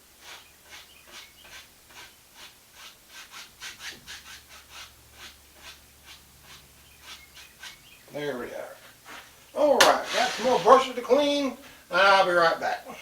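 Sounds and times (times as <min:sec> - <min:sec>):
paintbrush stroking canvas: 0:00.0 - 0:08.0, 0:09.1 - 0:11.2.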